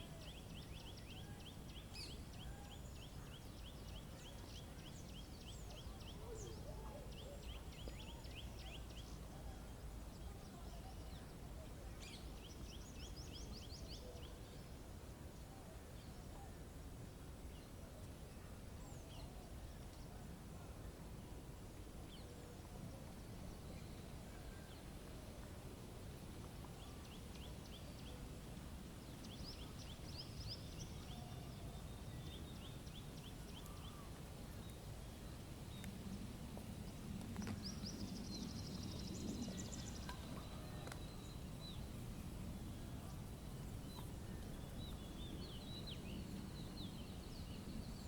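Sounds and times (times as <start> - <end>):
songbirds chirping: 0.0 - 48.0
low wind rumble: 16.7 - 48.0.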